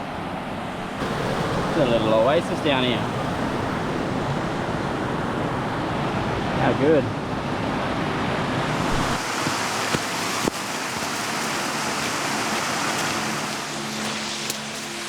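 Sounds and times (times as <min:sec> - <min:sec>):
wind rumble on microphone: 0:00.0 - 0:14.0
water rushing in a cascade: 0:08.2 - 0:15.0.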